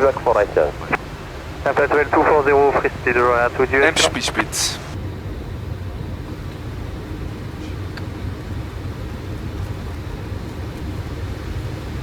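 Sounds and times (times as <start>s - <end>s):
aircraft cockpit rushing noise: 0.0s - 5.0s.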